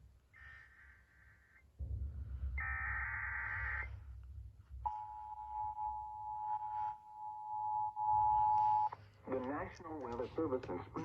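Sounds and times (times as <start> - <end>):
low rumble: 1.7 - 4.9.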